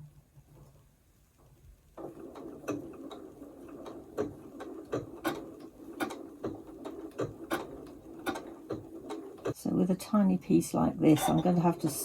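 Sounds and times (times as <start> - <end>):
sewing machine clicking: 2.0 - 9.6, 11.2 - 12.0.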